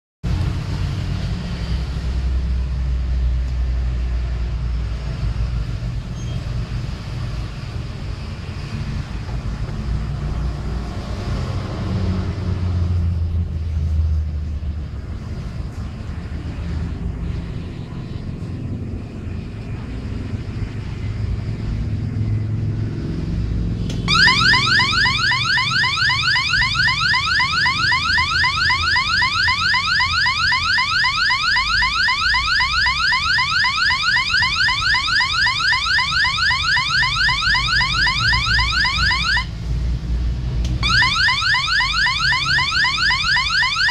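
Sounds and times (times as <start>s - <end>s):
low rumbling background noise: 0.3s - 43.8s
rising alarm tone from loudspeaker: 24.0s - 39.5s, 40.8s - 43.9s.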